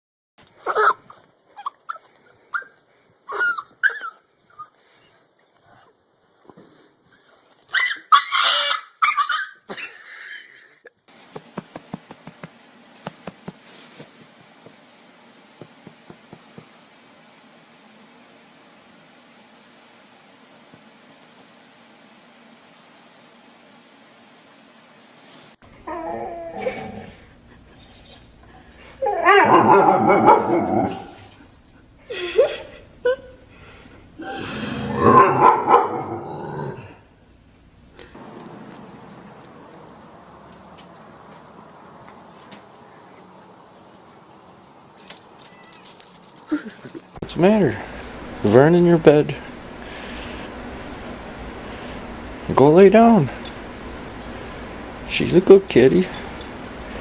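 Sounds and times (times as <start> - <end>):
dog yelping whining and barking: 0.6 - 4.8, 7.7 - 9.6, 27.7 - 31.2
animal harsh cries: 7.7 - 9.6
steady hiss: 11.1 - 25.6, 38.1 - 57.0.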